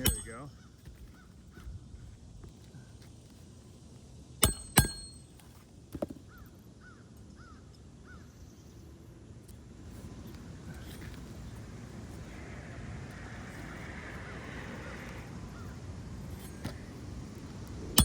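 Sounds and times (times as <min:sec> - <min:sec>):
hammer striking metal tool: 0:00.0 - 0:00.4, 0:04.4 - 0:05.3.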